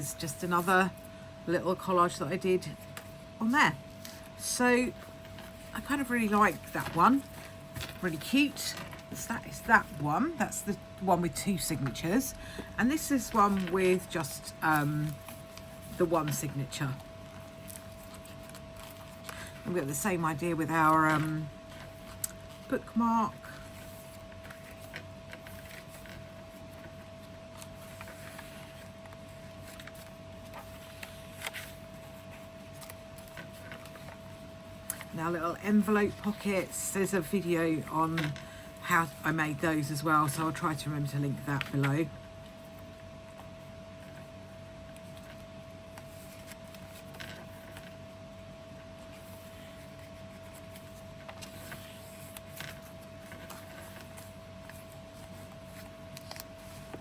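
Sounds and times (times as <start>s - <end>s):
faint steady hum: 0.0s - 57.0s
paper rustling: 3.9s - 10.0s, 12.9s - 57.0s.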